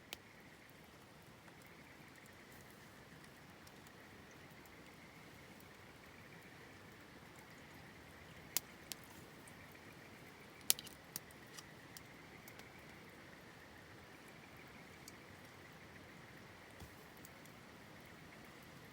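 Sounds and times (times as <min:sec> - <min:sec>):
campfire crackling and popping: 0:00.0 - 0:13.1
faint steady hiss: 0:00.0 - 0:18.9.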